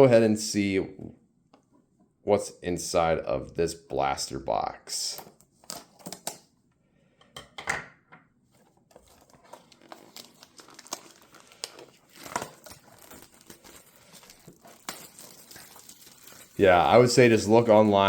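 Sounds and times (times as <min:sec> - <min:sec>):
plastic wrap tearing and crinkling: 0:08.9 - 0:18.0.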